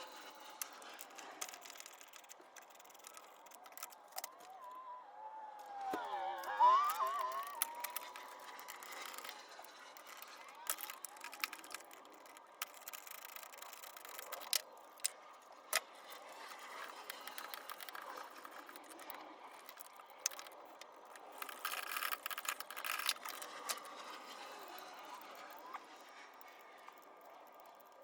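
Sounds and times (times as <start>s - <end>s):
sharp clicks: 0.0s - 4.6s.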